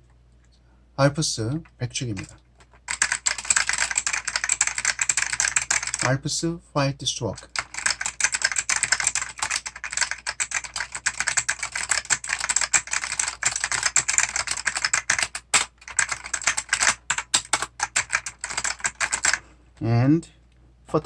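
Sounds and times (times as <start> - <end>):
typing on mechanical keyboard: 2.1 - 6.1, 7.4 - 19.4.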